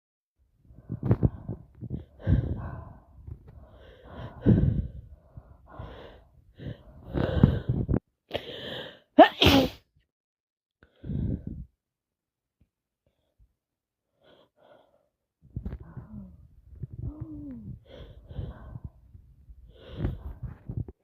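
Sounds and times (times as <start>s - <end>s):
gasping breaths: 0.7s - 9.2s, 14.2s - 20.7s
person sneezing: 9.2s - 9.8s.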